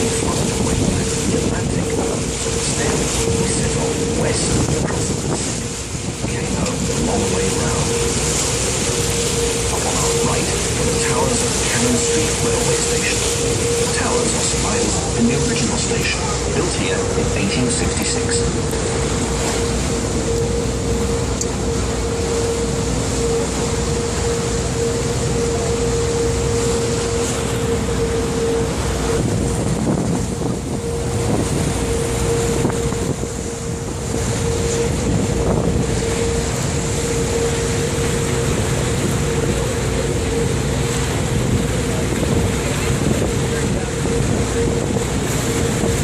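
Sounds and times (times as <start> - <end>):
wind noise on microphone: 0.0 - 7.9, 27.6 - 46.0
boat engine droning: 0.0 - 46.0
rushing water: 0.0 - 46.0.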